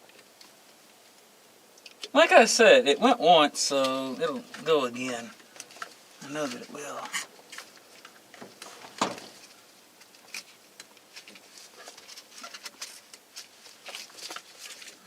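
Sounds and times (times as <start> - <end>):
wiring harness clicks and rustling: 5.3 - 15.0.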